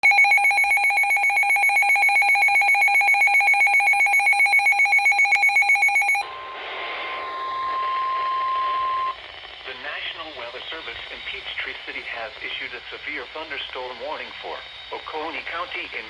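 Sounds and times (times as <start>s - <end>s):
steady alarm tone: 0.0s - 9.2s
radio hiss: 6.3s - 16.0s.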